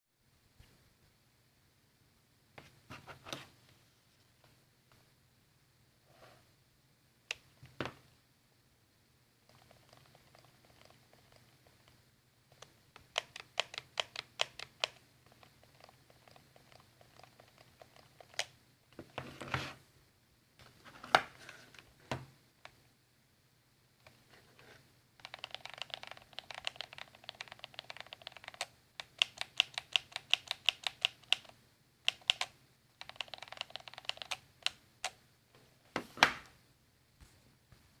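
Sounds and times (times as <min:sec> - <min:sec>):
joystick clicking and knocking: 0:12.6 - 0:19.6, 0:25.2 - 0:35.2.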